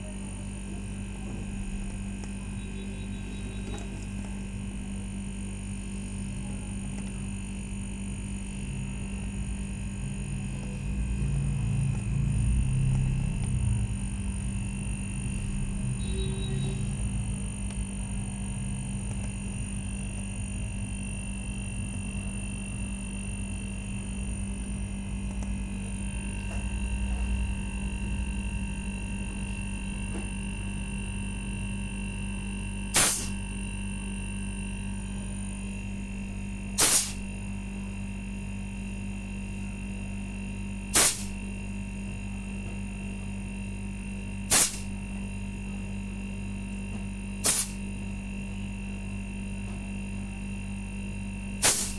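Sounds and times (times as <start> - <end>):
faint high steady tone: 2.4 - 4.0, 16.0 - 17.0
short sharp bursts: 33.0 - 33.4, 36.8 - 37.3, 41.0 - 41.4, 44.5 - 44.9, 47.4 - 47.8, 51.6 - 51.9.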